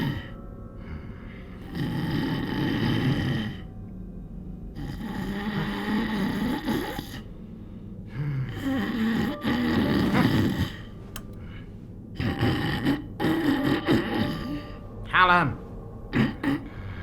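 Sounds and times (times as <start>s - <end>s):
heavy snoring: 0.0s - 3.7s, 4.8s - 7.4s, 8.1s - 11.5s, 12.1s - 14.8s, 16.1s - 17.0s.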